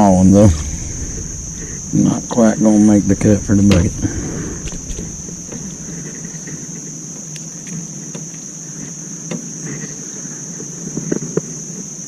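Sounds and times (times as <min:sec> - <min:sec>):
low steady hum: 0:00.0 - 0:07.5
insects droning: 0:00.0 - 0:12.0.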